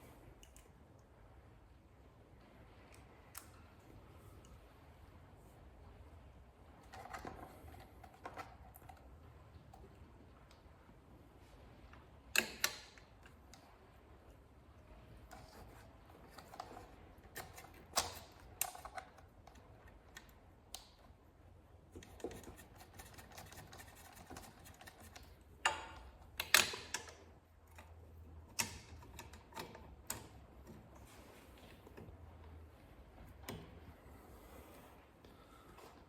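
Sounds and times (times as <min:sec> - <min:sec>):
clicks and knocks of small parts: 0:12.4 - 0:13.7, 0:15.3 - 0:21.1, 0:21.9 - 0:30.8.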